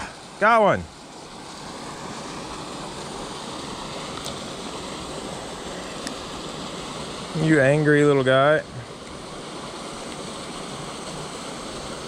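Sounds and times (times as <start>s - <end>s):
creek water running: 0.0s - 12.0s.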